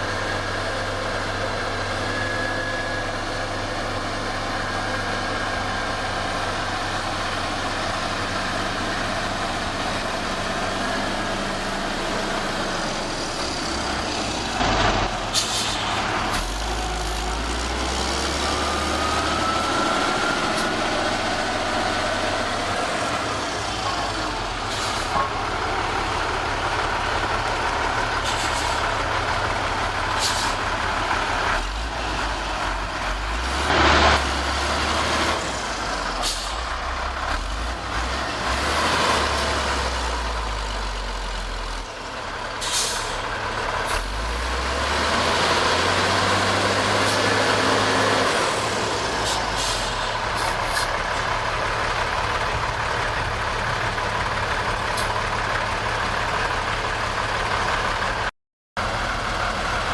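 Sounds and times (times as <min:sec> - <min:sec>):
heavy diesel machinery engine: 0:00.0 - 0:59.9
hissing and clanking noises: 0:14.6 - 0:17.3, 0:28.2 - 0:28.9, 0:30.1 - 0:30.6, 0:36.2 - 0:36.7, 0:42.6 - 0:43.3, 0:49.2 - 0:51.3.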